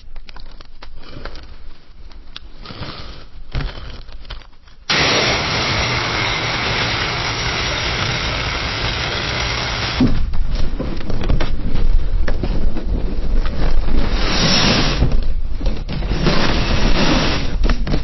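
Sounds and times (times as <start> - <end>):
rushing flame noise: 4.9 - 10.3, 14.1 - 15.2.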